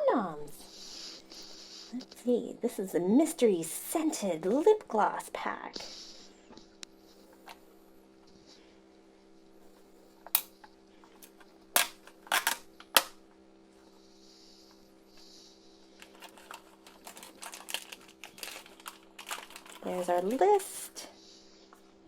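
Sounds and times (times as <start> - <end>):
packaging crinkling: 11.2 - 13.1, 16.0 - 20.6
plastic packaging snapping: 11.2 - 13.2, 16.0 - 20.4.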